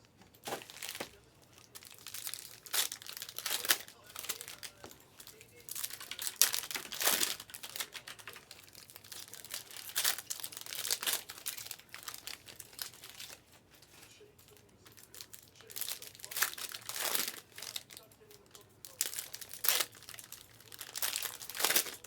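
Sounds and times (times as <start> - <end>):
plastic wrappers crinkling and tearing: 0.0 - 22.0.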